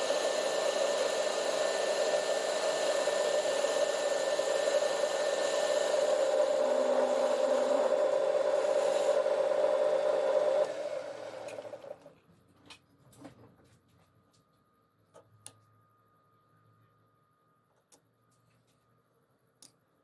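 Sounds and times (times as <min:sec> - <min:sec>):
metal lathe motor whirring: 0:00.0 - 0:12.1.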